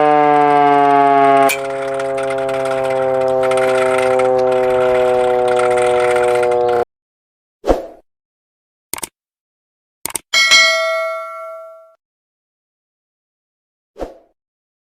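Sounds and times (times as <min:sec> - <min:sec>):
siren steady tone: 0:00.0 - 0:06.9.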